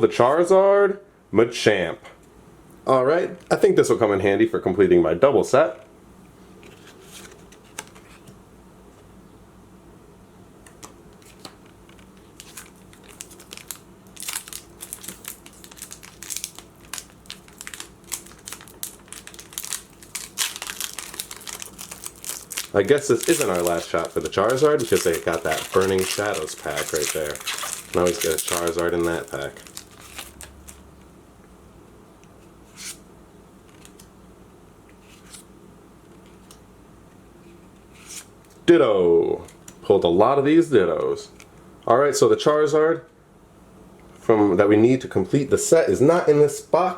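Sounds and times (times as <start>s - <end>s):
plastic and foil packaging crinkling: 12.2s - 30.9s.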